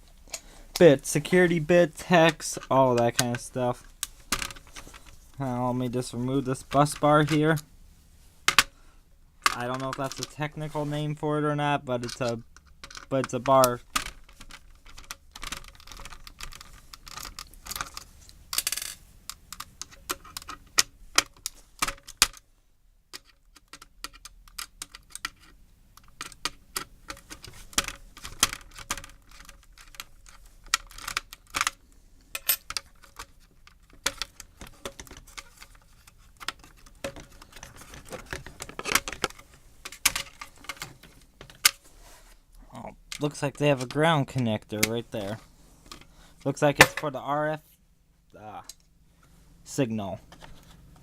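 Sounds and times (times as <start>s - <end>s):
plastic and metal parts clicking: 9.4s - 10.6s, 12.0s - 22.4s, 23.1s - 41.8s
scrape: 41.8s - 42.4s.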